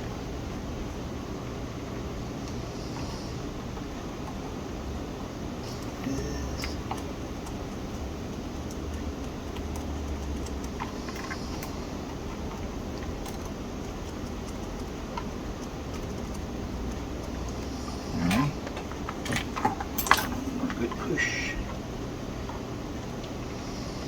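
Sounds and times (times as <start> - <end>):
low background hum: 0.0 - 24.0
soldering tools clicking and tapping: 6.6 - 20.8.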